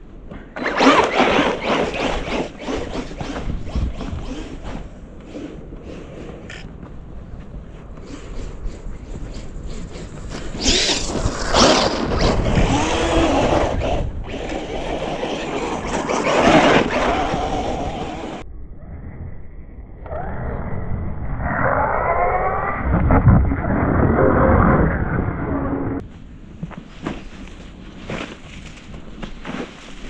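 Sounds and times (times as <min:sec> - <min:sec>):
rough tyre and chassis noise: 0:00.0 - 0:18.4
rc truck electric motor whining: 0:09.6 - 0:18.4.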